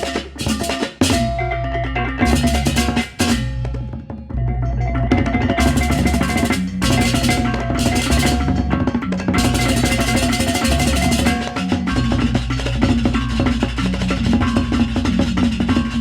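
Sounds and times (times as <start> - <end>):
drums: 0.0 - 16.0
ringing gongs: 4.8 - 16.0
clashing cymbals: 9.3 - 16.0.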